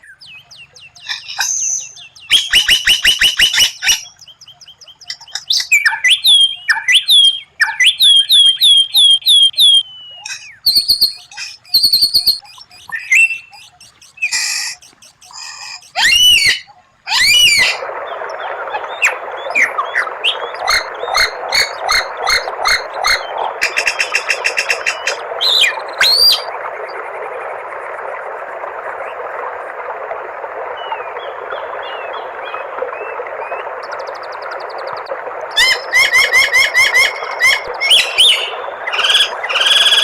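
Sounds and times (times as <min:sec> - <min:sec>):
bird singing whistled phrases: 0:00.0 - 0:17.8, 0:23.8 - 0:26.5, 0:35.6 - 0:40.0.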